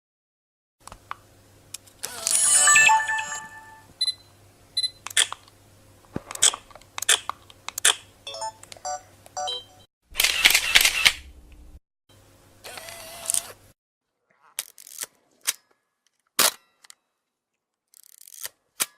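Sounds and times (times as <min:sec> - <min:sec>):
camera shutter clicks: 0:10.2 - 0:11.2, 0:12.7 - 0:13.6
camera mechanism clatter: 0:17.9 - 0:18.6.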